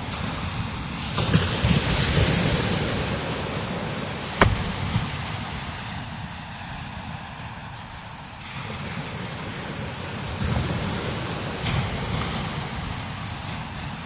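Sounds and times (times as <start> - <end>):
strong wind gusting: 0.0 - 14.0
wind buffeting microphone: 0.0 - 14.0
sharp pop: 4.4 - 4.9.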